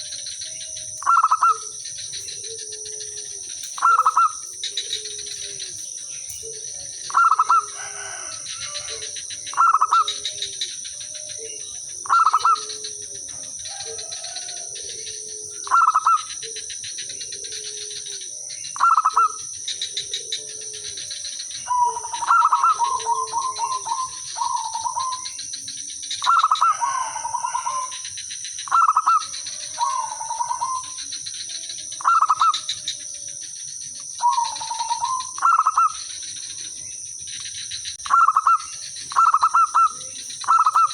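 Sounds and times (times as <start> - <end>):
dove staccato song: 0.0 - 11.4, 12.0 - 31.3, 33.7 - 40.9
steady high whine: 0.0 - 26.6
faint doves cooing: 0.0 - 40.9.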